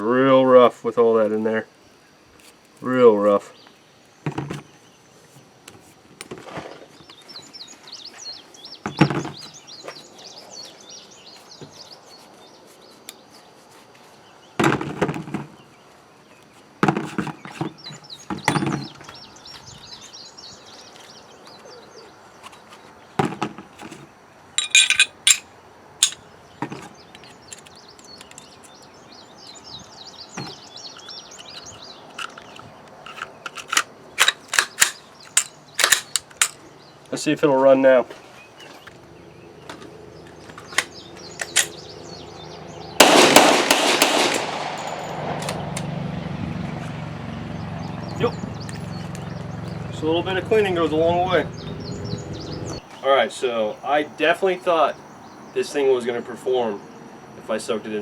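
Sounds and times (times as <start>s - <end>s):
faint birds chirping: 0.0s - 58.0s
pistol parts knocks and clicks: 24.6s - 28.6s, 30.4s - 36.7s, 39.7s - 41.8s.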